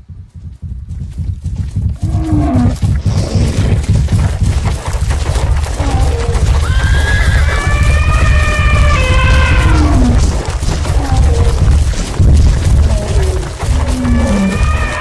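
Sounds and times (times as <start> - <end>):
dense low rumble: 0.0 - 15.0
cow mooing: 7.5 - 11.7, 12.7 - 15.0.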